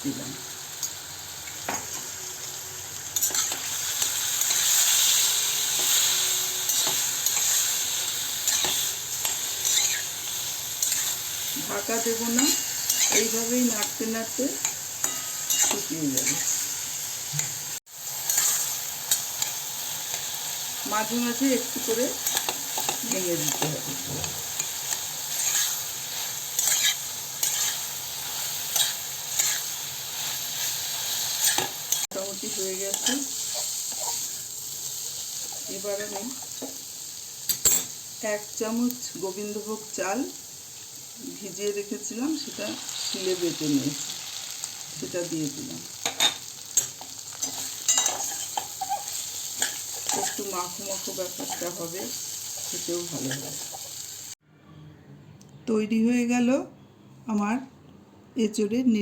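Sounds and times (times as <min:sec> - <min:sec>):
food sizzling in hot oil: 0:00.0 - 0:54.4
spatula scraping a pan: 0:04.4 - 0:10.2, 0:22.2 - 0:32.1, 0:46.0 - 0:51.8.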